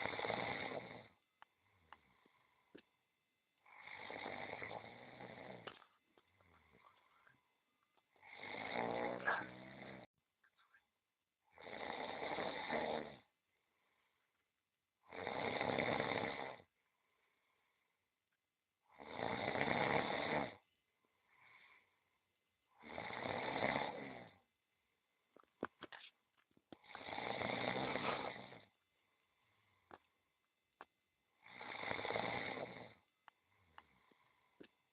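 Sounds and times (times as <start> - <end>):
cat snoring: 0.0 - 1.2, 3.6 - 5.8, 8.2 - 10.1, 11.5 - 13.3, 15.0 - 16.7, 18.8 - 20.6, 22.7 - 24.4, 26.8 - 28.7, 31.4 - 33.0.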